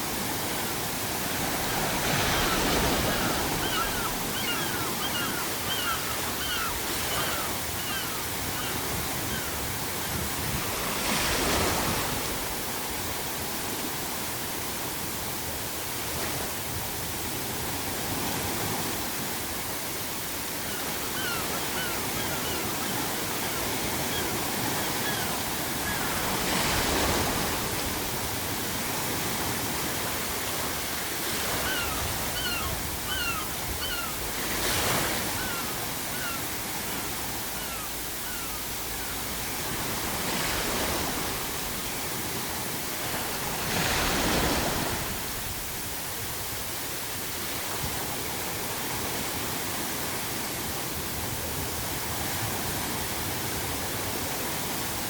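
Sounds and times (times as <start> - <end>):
sea waves breaking: 0.0 - 14.2, 15.9 - 49.3
seagulls crying: 1.5 - 10.2, 20.3 - 27.5, 31.2 - 39.8.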